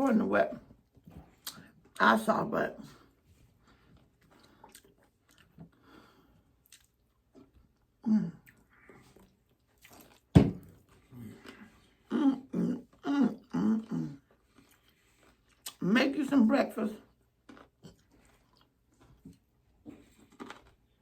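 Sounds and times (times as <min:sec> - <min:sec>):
small clicks of eating: 0:03.9 - 0:05.8, 0:17.4 - 0:20.8
person clearing throat: 0:12.1 - 0:14.1.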